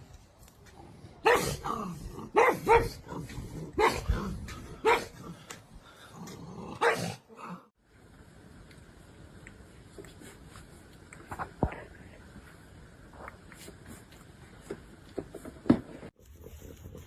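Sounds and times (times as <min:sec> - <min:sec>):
dog barking: 0:01.2 - 0:03.1, 0:03.8 - 0:04.2, 0:04.8 - 0:05.3, 0:06.8 - 0:07.2.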